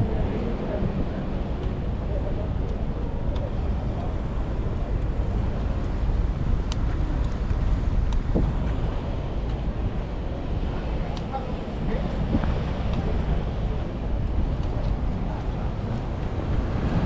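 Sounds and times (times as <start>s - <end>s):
city street rumble: 0.0s - 17.0s
faint clicks: 2.6s - 3.5s.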